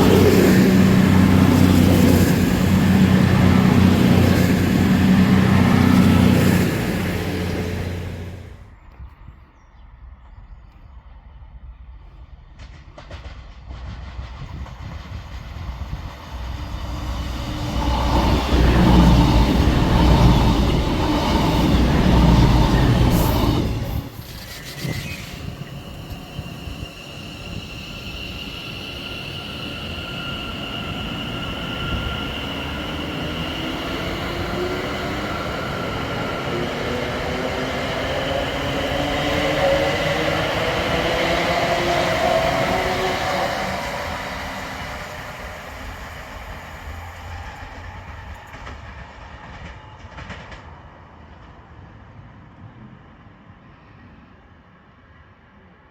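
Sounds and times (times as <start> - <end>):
train motors whining: 0.0 - 8.6, 16.0 - 48.8
train passing platform: 0.0 - 8.9, 11.0 - 55.9.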